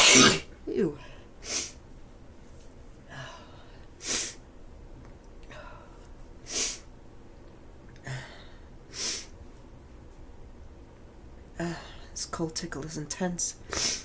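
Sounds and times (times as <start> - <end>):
woman sneezing: 0.0 - 0.5.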